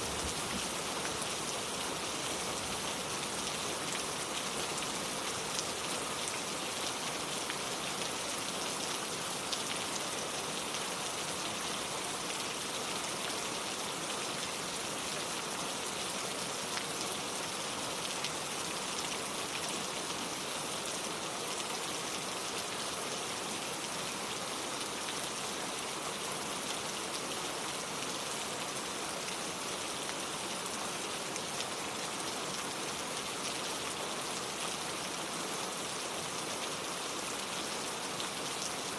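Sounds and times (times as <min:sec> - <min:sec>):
rain falling: 0:00.0 - 0:38.9.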